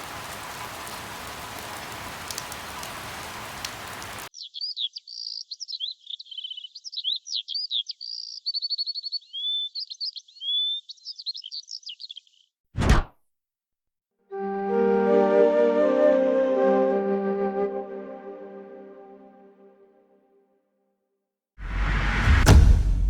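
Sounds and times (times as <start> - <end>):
steady rain: 0.0 - 4.3
songbird singing: 0.8 - 12.6.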